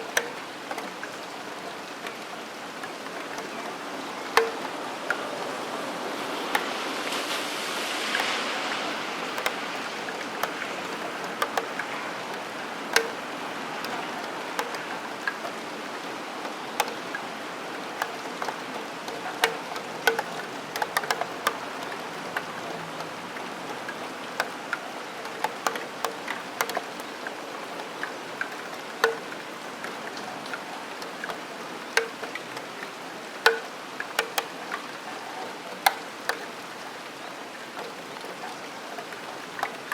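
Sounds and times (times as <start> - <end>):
hiss of rain: 0.0 - 39.9
rain dripping on metal sill: 0.0 - 39.9.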